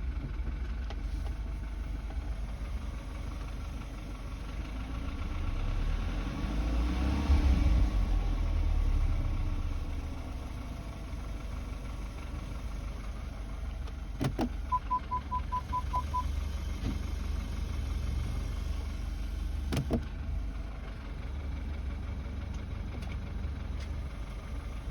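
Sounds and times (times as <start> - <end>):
car drivetrain rumble: 0.0 - 24.9
short electronic beeps: 14.7 - 16.3.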